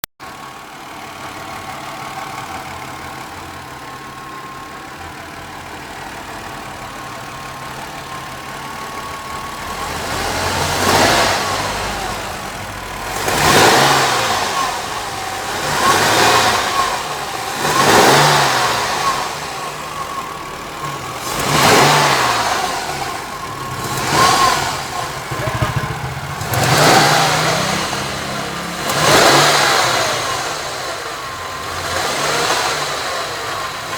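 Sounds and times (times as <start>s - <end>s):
car engine idling: 0.2s - 33.9s
engine revving in throttle blips: 7.4s - 33.9s.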